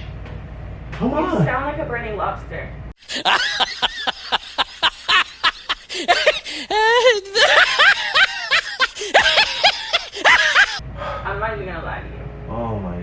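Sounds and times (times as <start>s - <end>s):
person breathy vocal bursts: 5.8s - 7.4s
person wavering moan: 5.8s - 7.8s.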